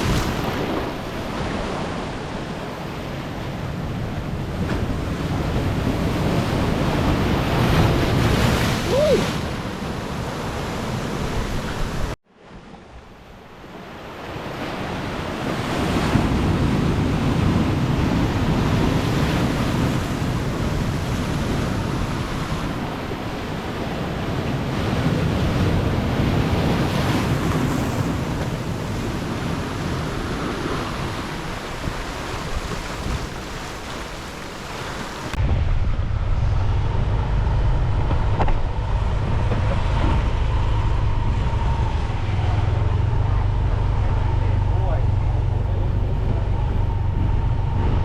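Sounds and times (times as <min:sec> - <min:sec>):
waves breaking on a beach: 0:00.0 - 0:48.0
wind buffeting microphone: 0:14.3 - 0:48.0
low engine rumble: 0:35.4 - 0:48.0.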